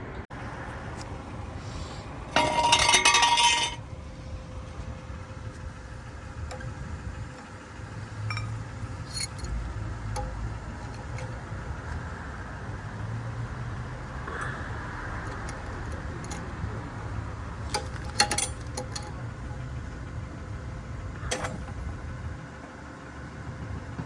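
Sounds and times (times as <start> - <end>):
metal tools clinking: 2.3 - 3.8, 8.2 - 11.4, 17.7 - 19.2.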